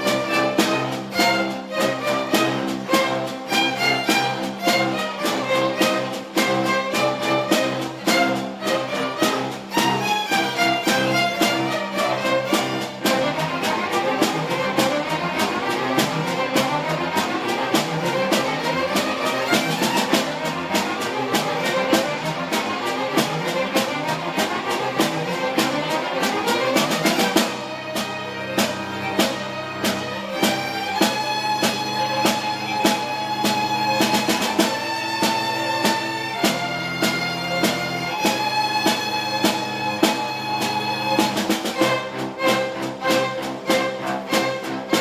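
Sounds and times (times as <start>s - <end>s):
bowed strings in fast notes: 0.0s - 45.0s
drum kit beat: 0.0s - 45.0s.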